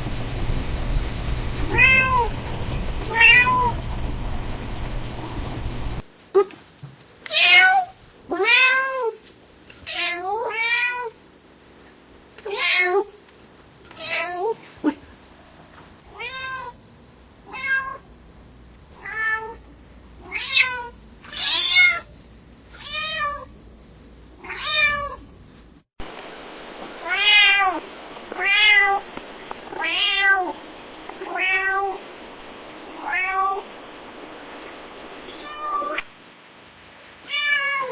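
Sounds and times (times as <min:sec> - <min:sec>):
steady hiss: 0:00.0 - 0:08.3, 0:13.1 - 0:37.7
cat meowing softly: 0:07.3 - 0:09.2, 0:27.0 - 0:27.8, 0:28.4 - 0:29.0, 0:29.7 - 0:30.6, 0:31.2 - 0:32.0, 0:33.0 - 0:33.6, 0:35.3 - 0:36.1, 0:37.2 - 0:37.9.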